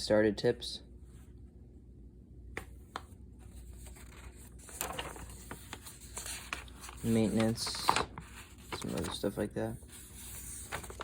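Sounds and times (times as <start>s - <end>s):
low steady hum: 0.0s - 11.0s
paper pages rustling: 3.0s - 11.0s.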